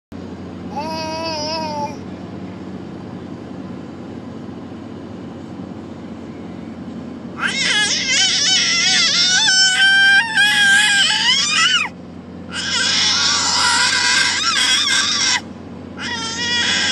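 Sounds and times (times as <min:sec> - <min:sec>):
cat yowling: 0:07.4 - 0:11.9, 0:12.5 - 0:15.4, 0:16.0 - 0:16.9.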